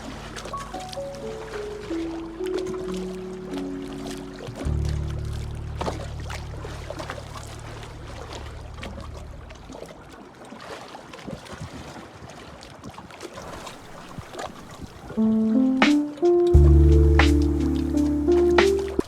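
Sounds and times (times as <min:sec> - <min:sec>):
river waves lapping: 0:00.0 - 0:19.0
small water splashes: 0:00.0 - 0:19.0
music tones: 0:00.8 - 0:05.8, 0:15.2 - 0:19.0.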